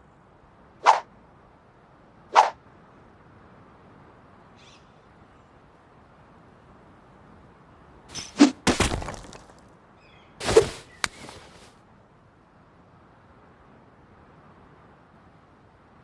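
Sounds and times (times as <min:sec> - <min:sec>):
spear swishes: 0:00.8 - 0:01.0, 0:02.4 - 0:02.6, 0:08.1 - 0:08.6, 0:10.4 - 0:11.7.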